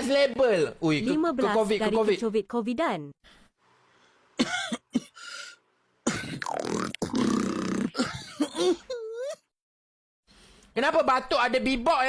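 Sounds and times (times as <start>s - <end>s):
man coughing: 4.4s - 5.3s, 6.0s - 6.5s, 7.9s - 9.5s
beatbox vocal noises: 6.3s - 8.0s.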